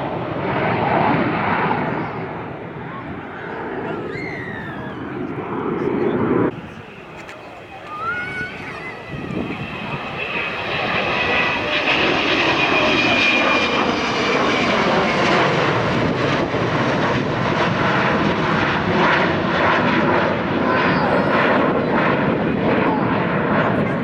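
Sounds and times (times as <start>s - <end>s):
jet engines roaring: 0.0s - 24.0s.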